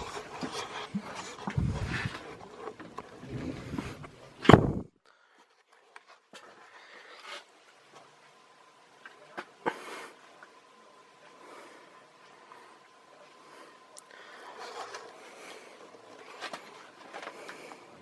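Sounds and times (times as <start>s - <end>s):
rustling and scraping of parts: 0.0s - 8.4s, 14.2s - 18.0s.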